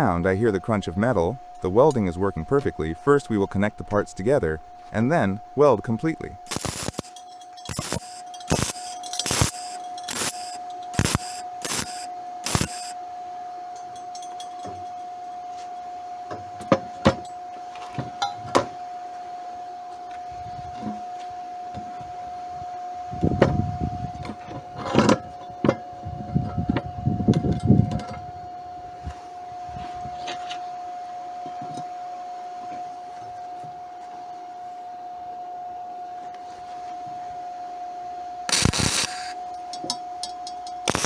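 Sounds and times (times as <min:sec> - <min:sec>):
faint steady whine: 0:00.0 - 0:41.0
welding arc crackling: 0:06.4 - 0:13.0, 0:38.5 - 0:39.4.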